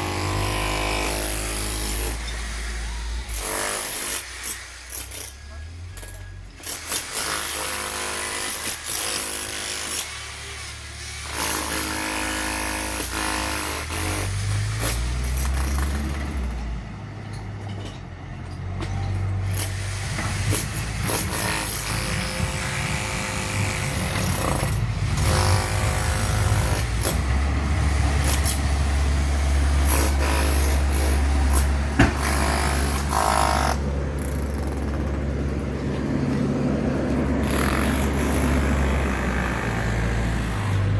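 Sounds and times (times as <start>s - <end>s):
diesel engine revving: 19.4s - 40.9s.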